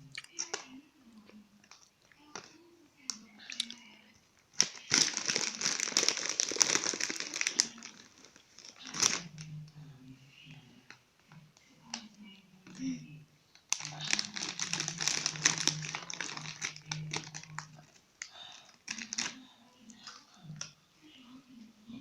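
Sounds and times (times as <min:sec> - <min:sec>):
plastic snack bag crinkling: 0:04.5 - 0:09.5, 0:13.6 - 0:19.4.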